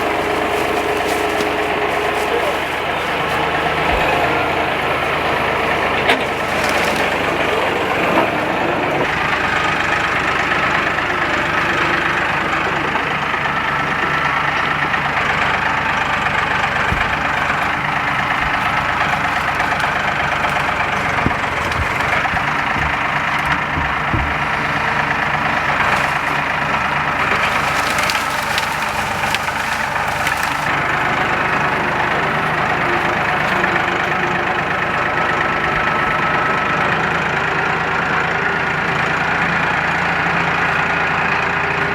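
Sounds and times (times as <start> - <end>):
vehicle engine idling: 0.0 - 41.9
short knocks: 13.8 - 30.8.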